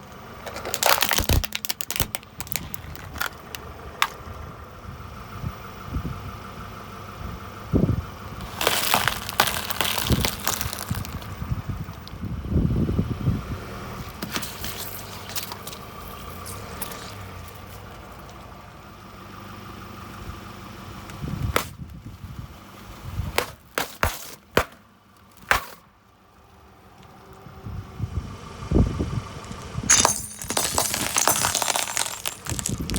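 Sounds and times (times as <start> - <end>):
car engine running: 0.0 - 32.9
car crushing objects: 0.4 - 4.2, 8.4 - 11.4, 21.5 - 21.8, 23.4 - 25.9, 29.9 - 32.9.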